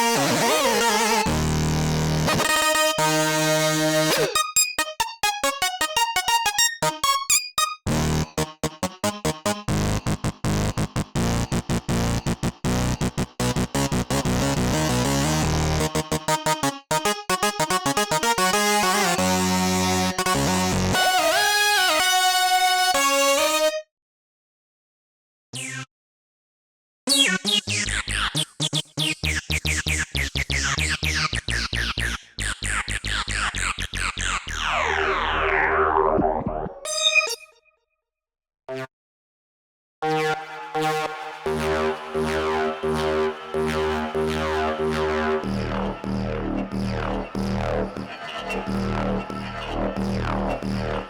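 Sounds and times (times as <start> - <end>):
rhythmic synthesizer chords: 0.0 - 21.2, 40.1 - 51.0
deep synth bass: 1.3 - 2.4, 7.9 - 16.2, 30.4 - 36.8, 41.5 - 51.0.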